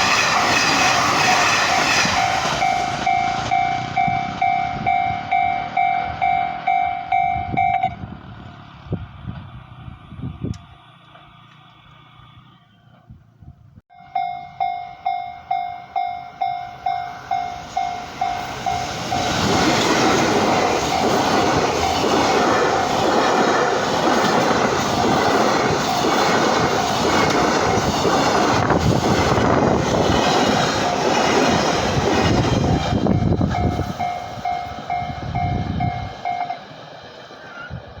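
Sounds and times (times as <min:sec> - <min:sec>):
train passing: 0:00.0 - 0:38.0
level crossing warning bell: 0:01.7 - 0:08.0, 0:13.9 - 0:19.7, 0:20.3 - 0:23.6, 0:33.1 - 0:36.7.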